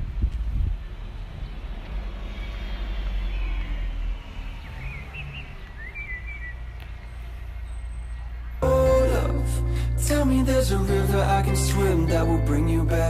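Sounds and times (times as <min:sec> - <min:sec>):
steady low rumble: 0:08.6 - 0:13.0.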